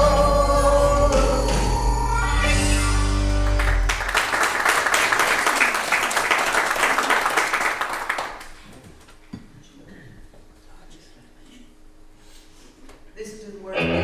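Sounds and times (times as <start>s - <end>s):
gospel chord with bass: 0.0s - 4.1s
congregation applauding: 3.2s - 8.8s.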